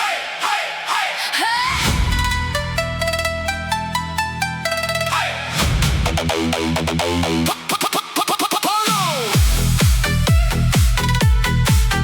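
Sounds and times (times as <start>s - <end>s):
sustained bass: 1.8s - 7.5s, 9.4s - 12.0s
plucky synth melody: 2.2s - 5.6s
heavy bass hit: 5.4s - 7.0s, 9.4s - 12.0s.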